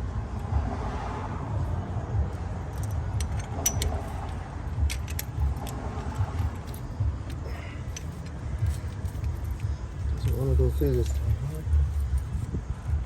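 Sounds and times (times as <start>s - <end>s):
steady low rumble: 0.0s - 13.0s
metallic clicks and clinks: 2.6s - 12.5s.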